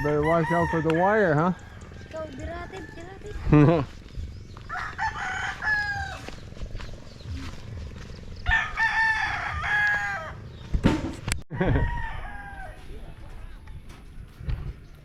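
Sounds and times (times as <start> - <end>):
rooster crowing: 0.0 - 3.4, 4.7 - 6.4, 8.4 - 10.4, 11.5 - 12.9.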